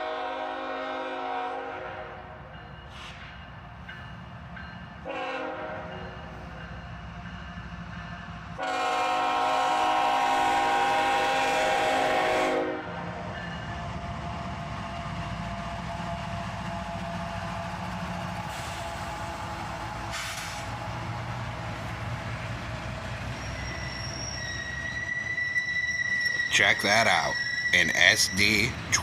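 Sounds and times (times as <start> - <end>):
locomotive air horn blasts: 0.0 - 2.2, 5.0 - 5.9, 8.6 - 13.1
low train rumble: 0.0 - 29.0.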